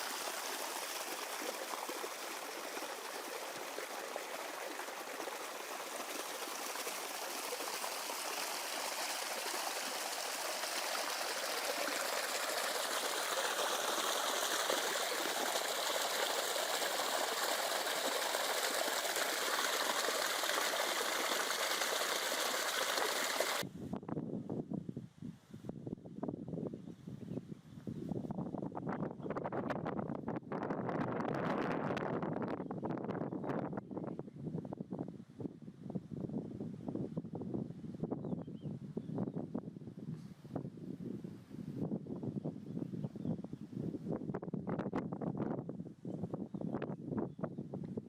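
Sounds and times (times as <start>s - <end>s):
water flowing in a stream: 0.0s - 23.6s.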